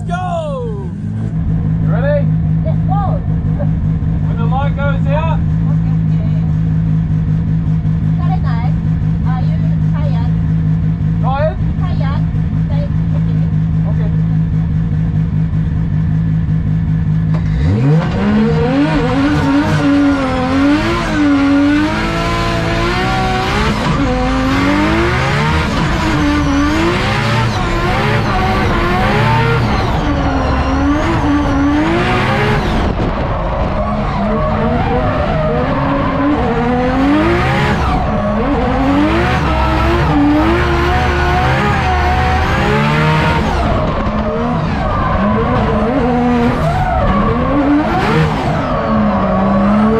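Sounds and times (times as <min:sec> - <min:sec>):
car engine revving: 0:00.0 - 0:49.9
tyre squeal and skidding: 0:43.4 - 0:49.9.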